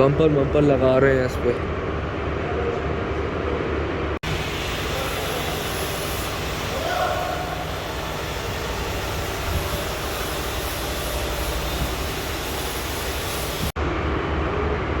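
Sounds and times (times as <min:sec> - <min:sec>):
low mechanical rumble: 0:00.0 - 0:15.0
loud hiss: 0:04.2 - 0:13.8.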